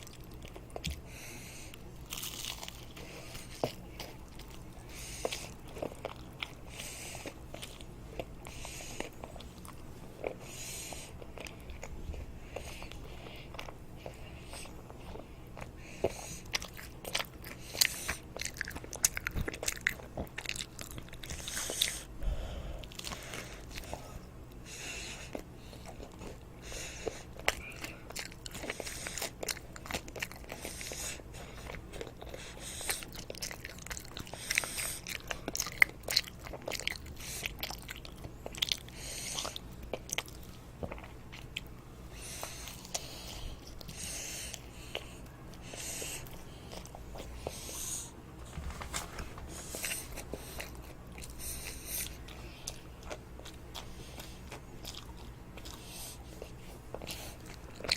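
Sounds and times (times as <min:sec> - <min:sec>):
child crunching toast: 0:02.0 - 0:04.6.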